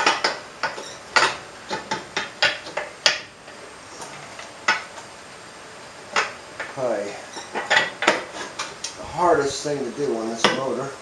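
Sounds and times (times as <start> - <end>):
metal clinking and knocking: 0.0 - 3.3, 7.4 - 8.8.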